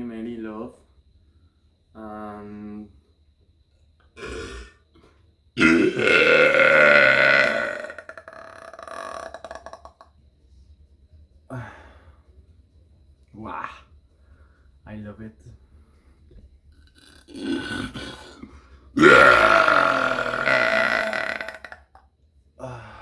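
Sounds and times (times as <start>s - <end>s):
person burping: 4.2s - 4.8s, 5.6s - 10.0s, 16.9s - 22.0s.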